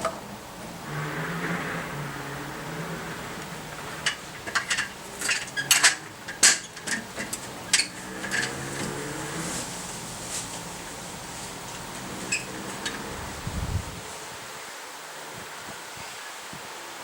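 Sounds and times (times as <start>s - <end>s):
steady low hum: 0.0s - 15.8s
metallic clinks and knocks: 4.0s - 8.6s.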